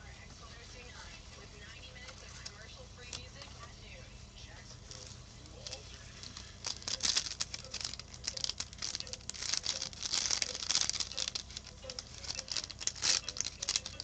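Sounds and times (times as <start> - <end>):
cards and packaging rustling: 4.8 - 14.0
plastic wrapper crinkling and tearing: 4.8 - 14.0.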